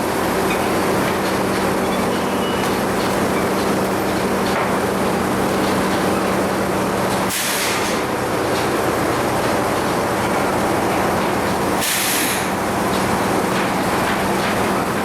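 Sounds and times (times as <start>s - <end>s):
sawmill machinery clattering: 0.0s - 15.0s
short burst of hiss: 7.3s - 7.9s, 11.8s - 12.5s.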